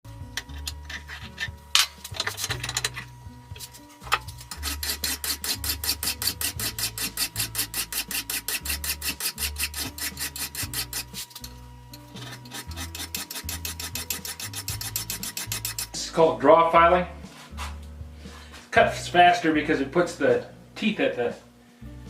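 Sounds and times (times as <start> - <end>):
background music: 0.1 - 22.0
hand file rasping on metal: 0.4 - 1.6, 4.4 - 16.0.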